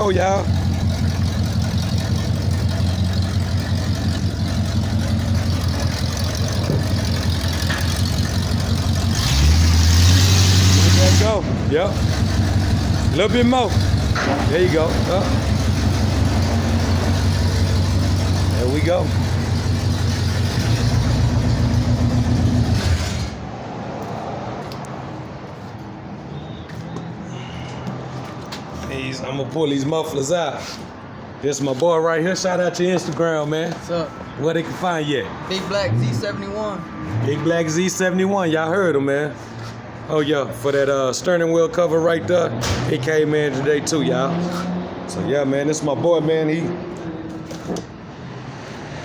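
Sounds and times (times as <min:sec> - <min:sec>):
engine low exhaust note: 0:00.0 - 0:23.4.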